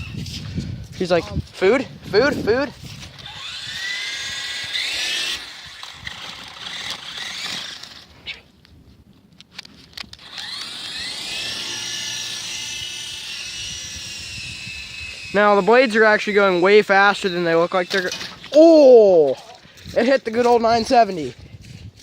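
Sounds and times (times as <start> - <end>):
toy helicopter motor whine: 0.0 - 0.3, 2.4 - 8.1, 10.2 - 18.6.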